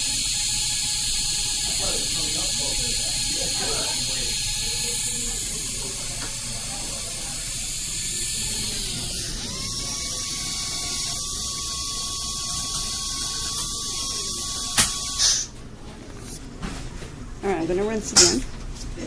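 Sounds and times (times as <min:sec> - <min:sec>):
dental instrument whine: 0:00.0 - 0:15.5.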